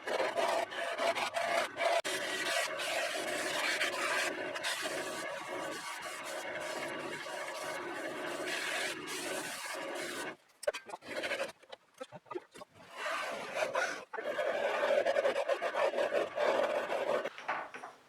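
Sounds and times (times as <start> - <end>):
hand tool rasping on wood: 0.0 - 2.3, 12.8 - 17.3.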